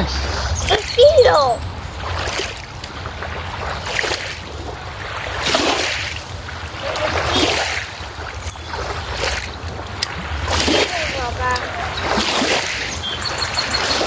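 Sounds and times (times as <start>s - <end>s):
small waves lapping: 0.0s - 14.0s
wind rumble on microphone: 0.0s - 14.0s.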